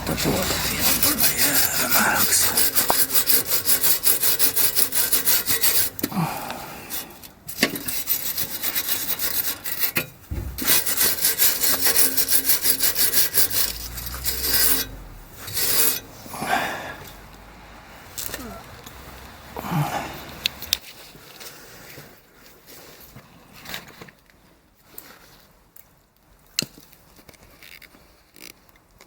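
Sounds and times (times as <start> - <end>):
paste scraping on exhaust pipe: 0.0 - 16.4.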